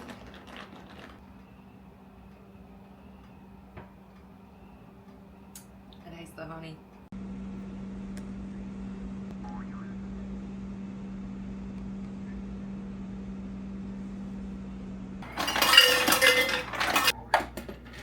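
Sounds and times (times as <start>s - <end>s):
low electric hum: 0.0s - 18.0s
dishes and utensils clattering: 15.2s - 18.0s.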